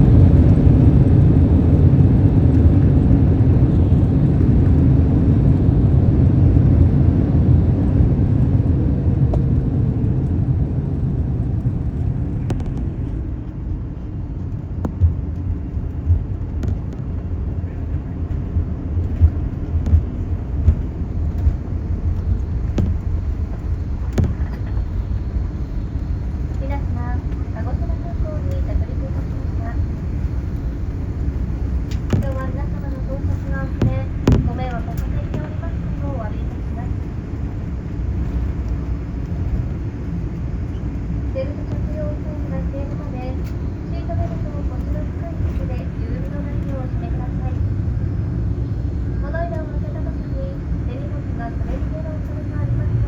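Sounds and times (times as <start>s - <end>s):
low rumble of engines and wheels: 0.0s - 53.0s.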